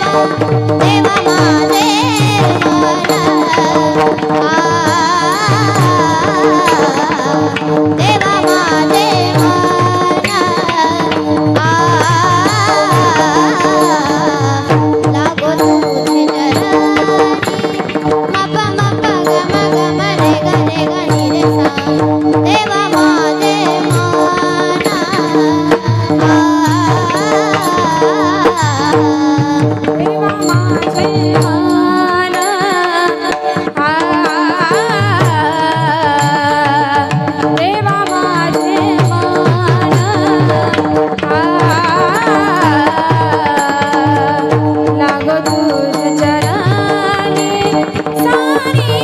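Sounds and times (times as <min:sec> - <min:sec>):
hand drum beating: 0:00.0 - 0:49.0
harmonium drone: 0:00.0 - 0:49.0
person singing devotional melody: 0:00.0 - 0:49.0.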